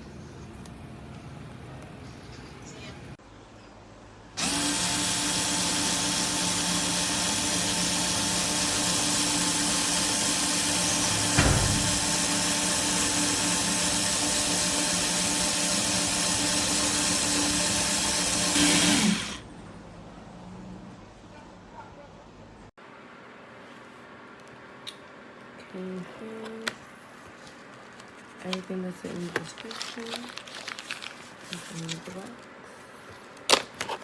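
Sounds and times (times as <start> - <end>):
electric screwdriver motor running: 4.4 - 19.4
knock: 11.1 - 12.3.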